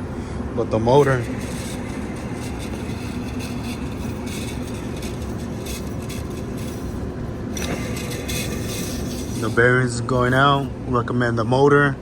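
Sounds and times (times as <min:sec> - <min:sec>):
low machinery hum: 0:00.0 - 0:12.0.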